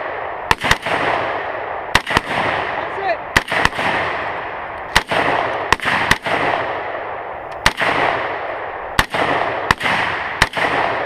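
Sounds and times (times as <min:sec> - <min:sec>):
rifle shots with echo: 0:00.0 - 0:11.0.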